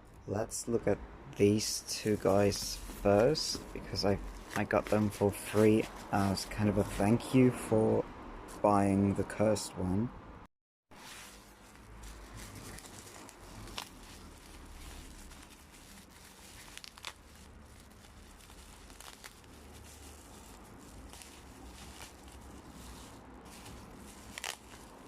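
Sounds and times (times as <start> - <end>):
packaging crinkling and rustling: 1.6 - 7.0, 11.0 - 25.0.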